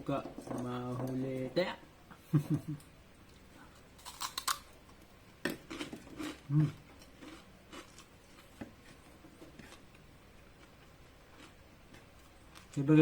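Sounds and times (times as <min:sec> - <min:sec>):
crunching pork rinds: 0:04.0 - 0:04.7, 0:05.6 - 0:08.6
low hummed vocal sound: 0:06.5 - 0:06.8.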